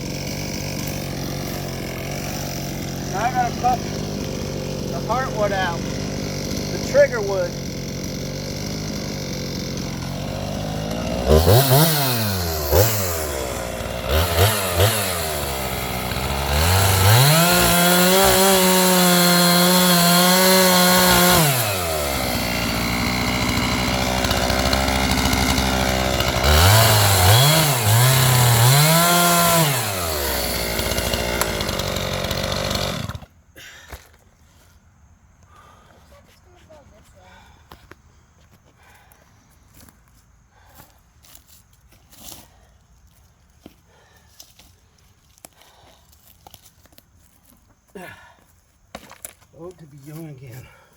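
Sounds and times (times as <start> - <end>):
chainsaw revving and cutting: 0.0 - 33.3.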